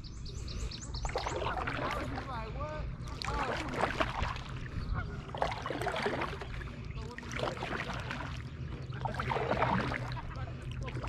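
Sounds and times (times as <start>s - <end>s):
steady low rumble: 0.0s - 11.0s
water splashing against kayak: 1.0s - 11.0s.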